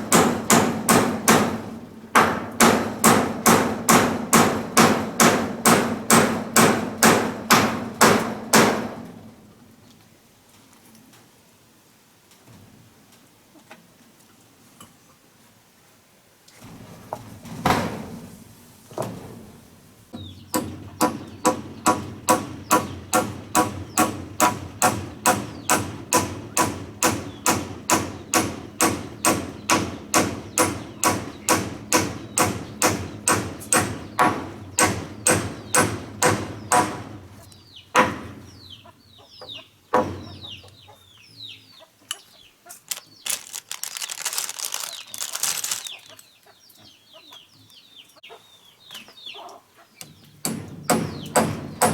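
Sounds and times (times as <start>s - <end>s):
chicks peeping: 20.2s - 24.2s, 37.4s - 43.8s, 44.8s - 51.4s
hen clucking: 38.6s - 43.4s, 45.9s - 50.0s.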